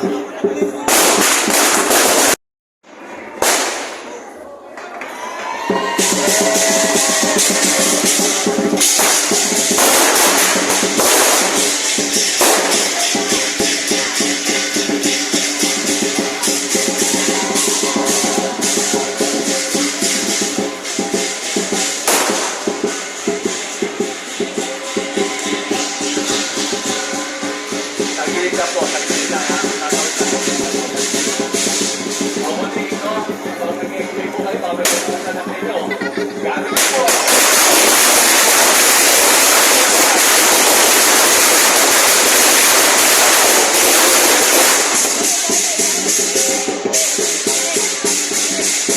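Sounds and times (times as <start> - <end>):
firecrackers crackling: 0.0 - 48.9
drum beating fast: 5.6 - 48.9
cymbals crashing: 5.7 - 34.2, 36.8 - 48.9.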